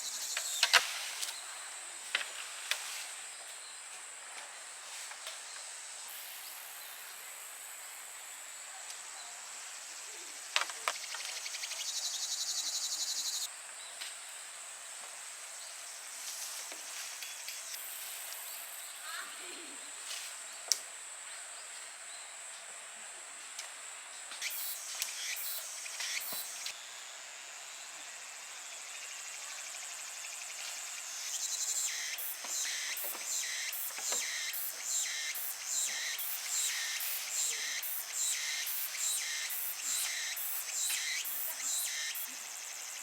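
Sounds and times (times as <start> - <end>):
insects buzzing: 0.0 - 43.0
short high insect chirps: 24.4 - 26.8, 30.3 - 43.0.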